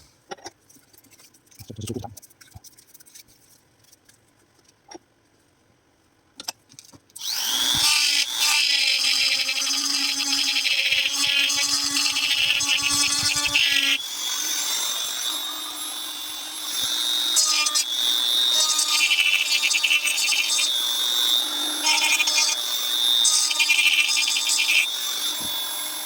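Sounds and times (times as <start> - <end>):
power grinder whining: 7.2 - 26.0.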